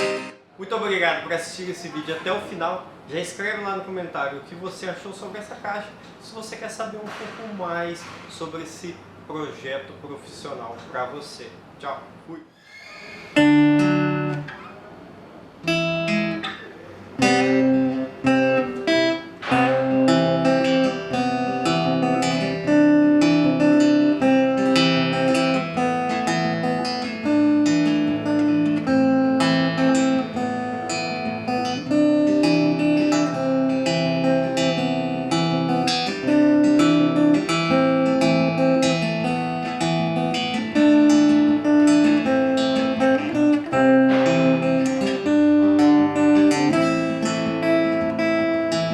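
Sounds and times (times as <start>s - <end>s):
acoustic guitar strumming: 0.0s - 0.6s, 13.3s - 48.9s.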